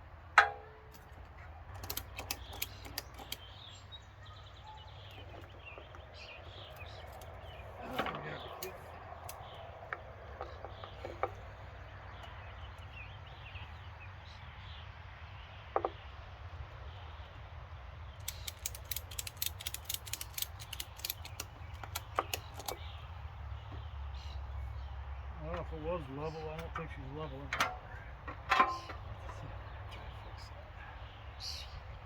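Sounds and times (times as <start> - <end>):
ratchet strap clicking: 18.2 - 22.9.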